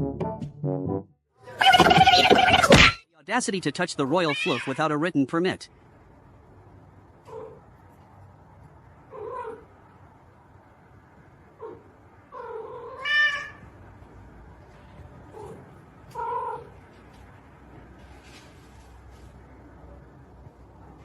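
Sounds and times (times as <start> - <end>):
cat meowing and yowling: 4.2 - 4.8, 12.4 - 13.6.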